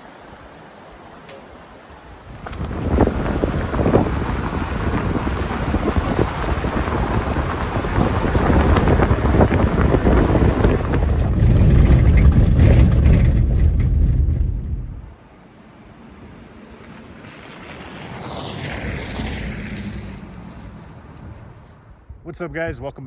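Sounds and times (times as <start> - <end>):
loud low rumbling: 2.3 - 15.2.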